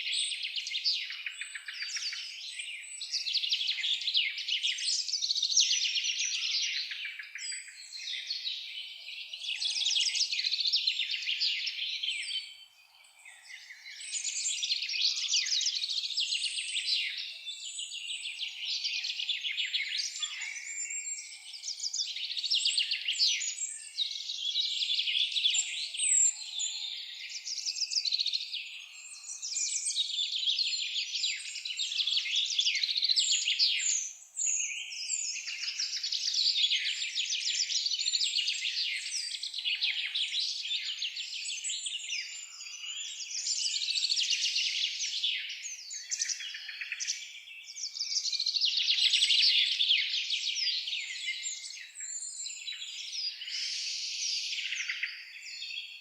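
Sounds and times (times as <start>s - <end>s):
songbirds chirping and trilling: 0.0s - 56.0s.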